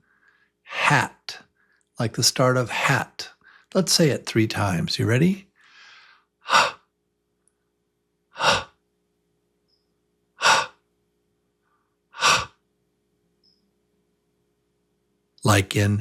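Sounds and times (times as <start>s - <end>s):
man breathing h sounds: 3.4s - 3.7s, 5.5s - 6.8s, 8.4s - 8.8s, 10.4s - 10.8s, 12.2s - 12.6s.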